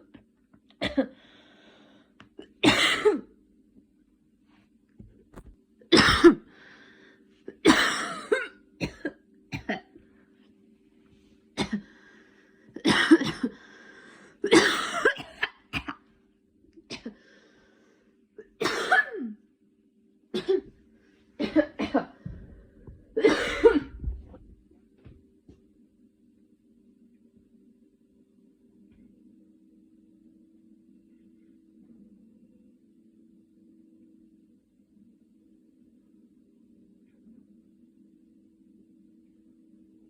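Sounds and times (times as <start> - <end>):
woman coughing: 0.8 - 1.2, 2.4 - 3.3, 5.9 - 6.5, 7.5 - 10.0, 11.6 - 11.9, 12.8 - 13.6, 14.4 - 16.0, 16.9 - 17.2, 18.4 - 19.4, 20.4 - 20.7, 21.4 - 22.5, 23.2 - 24.4.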